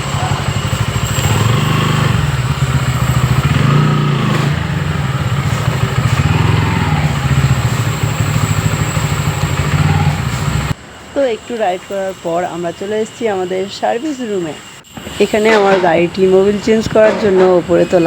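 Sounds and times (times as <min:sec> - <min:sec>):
motorcycle engine running: 0:00.0 - 0:10.8, 0:14.8 - 0:18.0.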